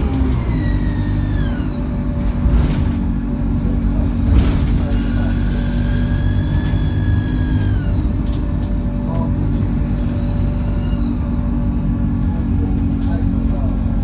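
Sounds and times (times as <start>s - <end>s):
turbo whine: 0.0s - 2.4s, 4.8s - 8.5s, 9.6s - 11.6s
bus engine droning: 0.0s - 14.0s
bus body knocks: 4.2s - 5.5s.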